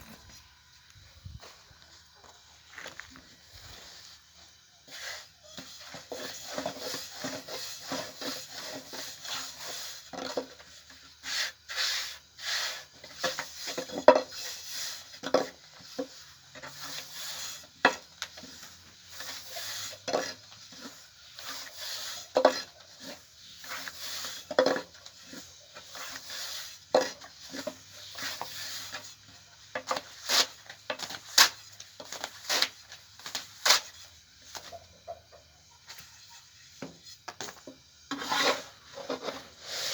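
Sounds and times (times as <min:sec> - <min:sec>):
utensil scraping a pot: 0:04.9 - 0:31.6, 0:38.1 - 0:39.9.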